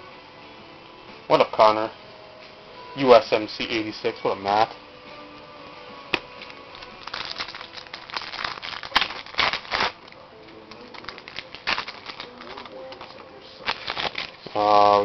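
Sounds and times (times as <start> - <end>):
wrapper crinkling and tearing: 6.1 - 15.0
cards rustling: 6.4 - 14.7.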